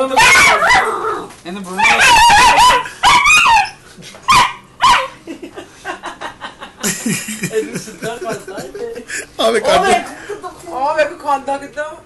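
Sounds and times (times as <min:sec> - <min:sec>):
puppy barking: 0:00.0 - 0:05.2.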